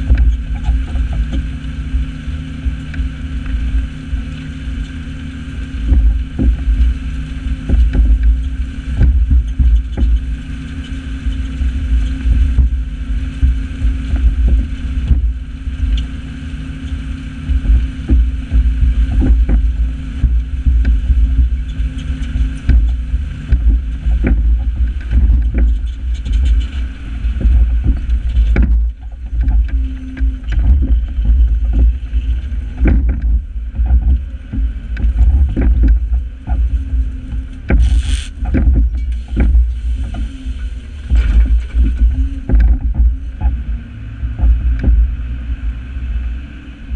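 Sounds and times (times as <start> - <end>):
heavy buffeting rumble: 0.0 - 46.9.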